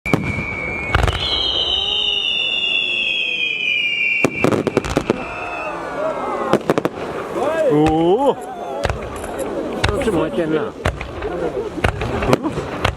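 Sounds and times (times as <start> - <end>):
firework whistle falling in pitch: 0.1 - 6.0
firework bangs: 0.1 - 8.2, 8.8 - 12.9.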